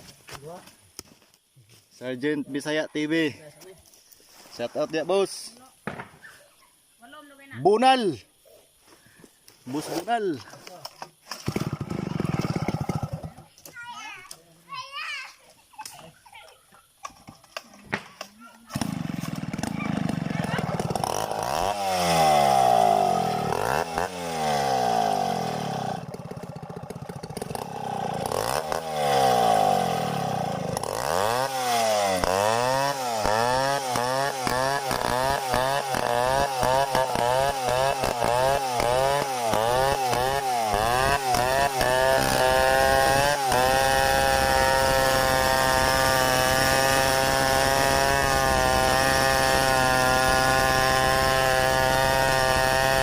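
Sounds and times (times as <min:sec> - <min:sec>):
chainsaw revving: 0:11.3 - 0:13.6, 0:18.6 - 0:53.0.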